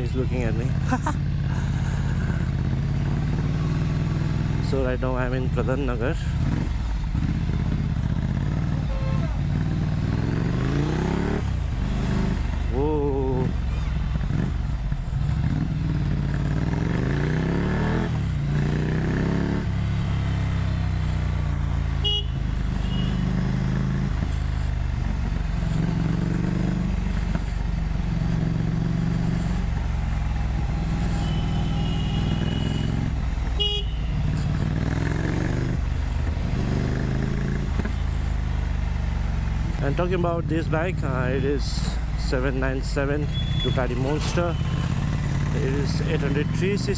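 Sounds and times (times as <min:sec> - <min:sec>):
motorcycle engine revving: 0:00.0 - 0:46.9
vehicle horns honking: 0:08.7 - 0:09.4, 0:22.0 - 0:23.4, 0:31.1 - 0:34.4, 0:43.3 - 0:43.8.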